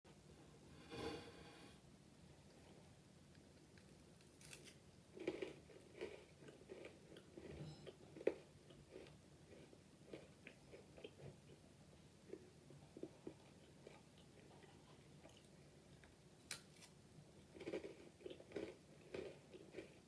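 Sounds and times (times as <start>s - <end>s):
pretzel crunching: 3.8s - 6.2s.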